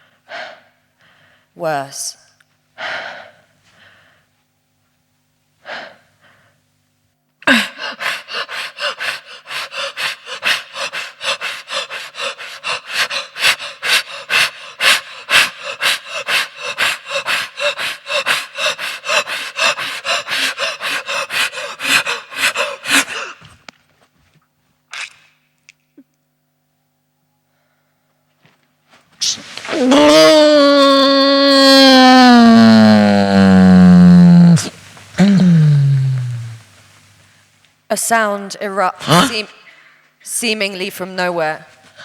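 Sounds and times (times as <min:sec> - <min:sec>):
person breathing: 0:00.0 - 0:01.6, 0:02.8 - 0:04.3, 0:07.5 - 0:23.6, 0:29.2 - 0:37.4
person panting loudly: 0:02.8 - 0:04.3, 0:07.5 - 0:23.6, 0:29.5 - 0:37.0.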